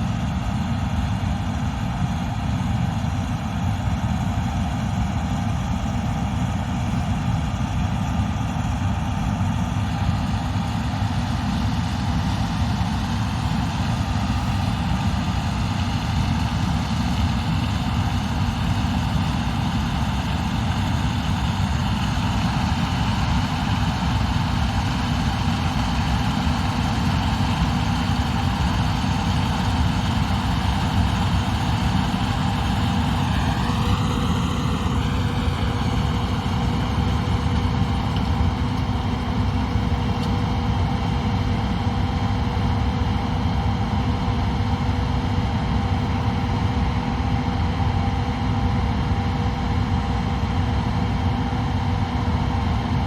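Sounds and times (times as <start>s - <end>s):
diesel engine drone: 0.0s - 53.0s
high whining drives: 19.2s - 44.6s.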